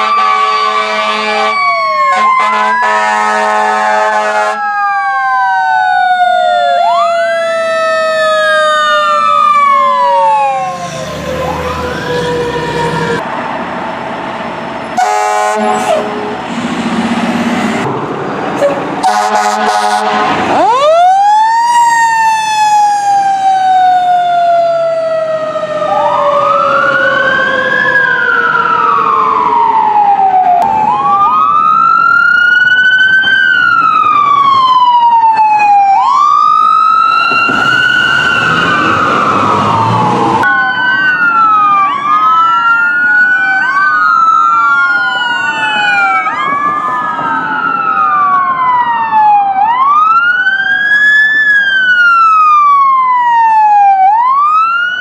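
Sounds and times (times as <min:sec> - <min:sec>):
emergency sirens wailing: 0:00.0 - 0:55.0
rushing noise: 0:15.6 - 0:19.1.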